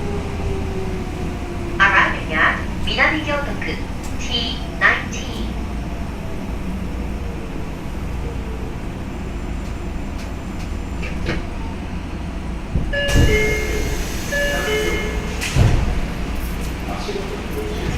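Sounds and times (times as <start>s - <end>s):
subway train rumble: 0.0s - 17.9s
train doors opening: 9.4s - 11.9s, 12.6s - 17.9s
door chime tones: 12.9s - 15.4s.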